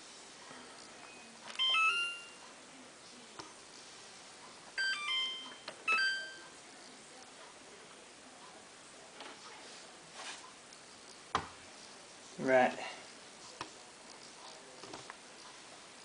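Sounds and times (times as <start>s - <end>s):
washing machine electronic chimes: 1.1s - 2.4s, 4.8s - 6.6s.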